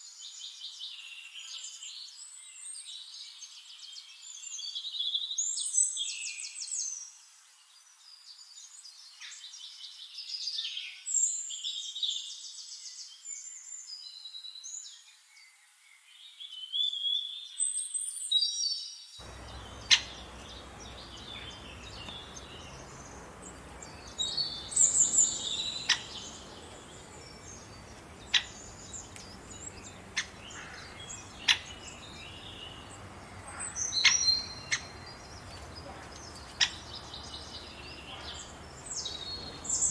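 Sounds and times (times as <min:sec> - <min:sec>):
songbirds singing: 0:00.0 - 0:39.9
sharp bird chips: 0:19.2 - 0:33.0
background hiss: 0:19.2 - 0:39.9.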